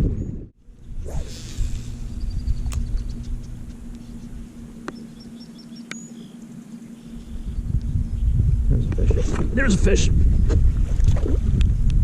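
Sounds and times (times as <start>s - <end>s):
low wind rumble: 0.0s - 12.0s
steady low hum: 0.0s - 12.0s
songbird calling: 0.7s - 8.5s.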